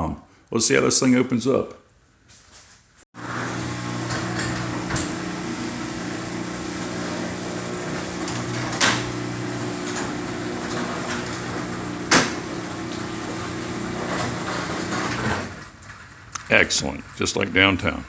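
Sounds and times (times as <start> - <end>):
garage door clunk: 3.2 - 16.2
garage door motor hum: 3.2 - 16.2.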